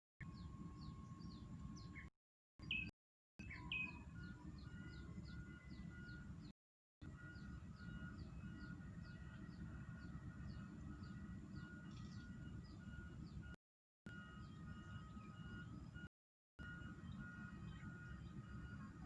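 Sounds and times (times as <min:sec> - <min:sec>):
faint bird chirping: 0:07.2 - 0:19.0.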